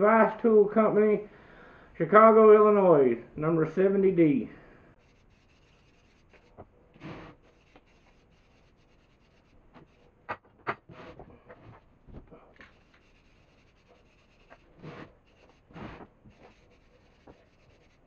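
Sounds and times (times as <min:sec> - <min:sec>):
rubbing and scratching on metal: 0:04.9 - 0:18.0.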